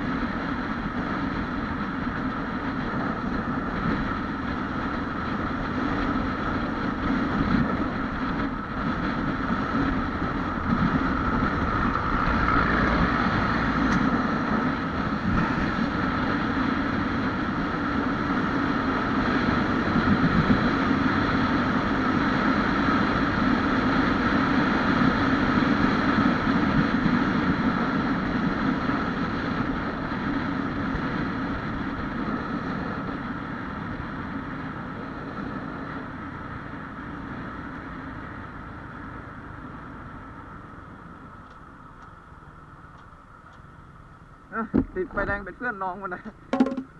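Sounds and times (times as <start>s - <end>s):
wind rushing past microphone: 0.0s - 38.3s
motorcycle engine running: 0.0s - 41.5s, 46.5s - 46.9s.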